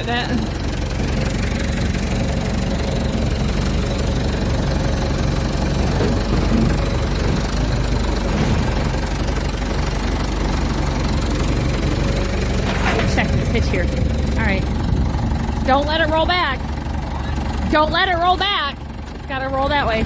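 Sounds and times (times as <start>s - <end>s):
tractor engine idling: 0.0s - 20.0s.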